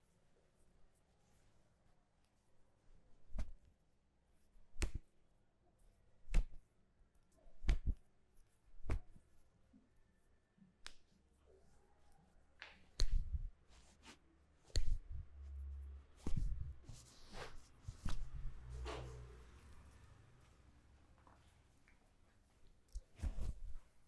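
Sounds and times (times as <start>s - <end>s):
sharp hand strikes: 4.8s - 5.1s.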